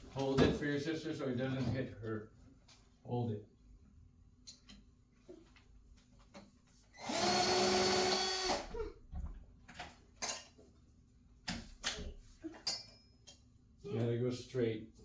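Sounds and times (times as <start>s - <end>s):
cordless drill running: 7.0s - 8.8s.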